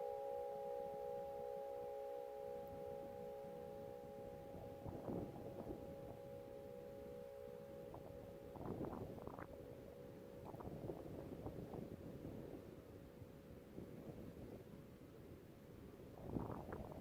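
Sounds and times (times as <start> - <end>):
wind or handling rustle: 4.3 - 17.0.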